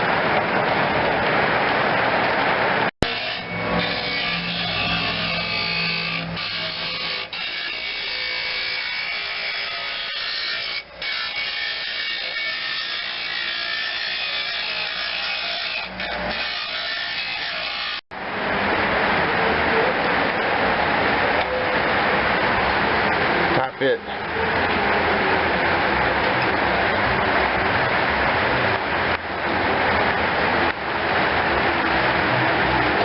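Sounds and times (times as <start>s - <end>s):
small high-speed power tool running: 3.0s - 18.0s.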